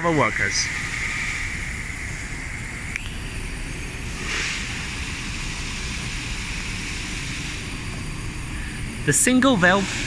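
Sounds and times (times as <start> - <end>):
factory machinery rumble: 0.0 - 10.0
faint steady whine: 0.0 - 10.0
short hiss: 4.2 - 5.5.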